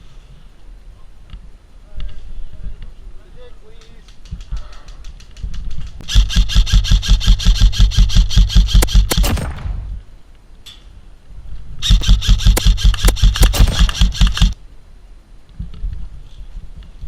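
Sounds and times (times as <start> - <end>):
airsoft rifle firing full auto: 6.0 - 10.0, 11.8 - 14.6.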